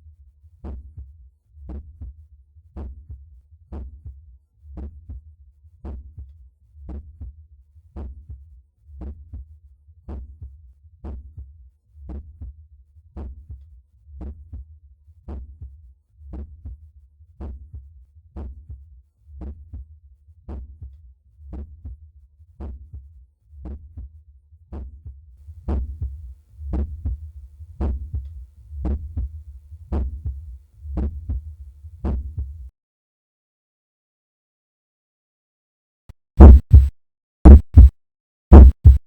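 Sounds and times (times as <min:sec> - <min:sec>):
heartbeat: 0:25.6 - 0:32.7, 0:36.4 - 0:36.9, 0:37.5 - 0:37.9, 0:38.5 - 0:39.0.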